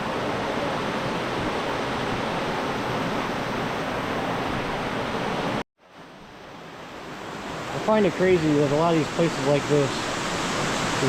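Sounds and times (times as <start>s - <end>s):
water pouring down waterfall: 7.7s - 11.0s.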